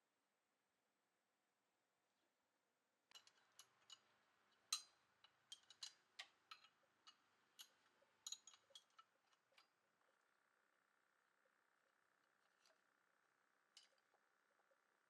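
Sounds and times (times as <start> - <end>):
small hard objects clinking: 5.5 - 9.0.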